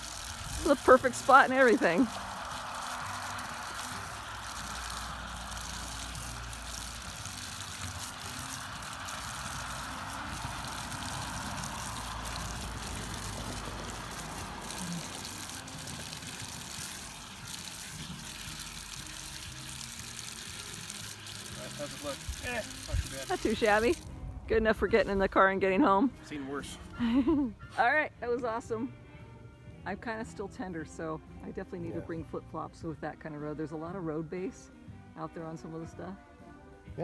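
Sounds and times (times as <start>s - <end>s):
water splashing over feet: 0.0s - 24.3s.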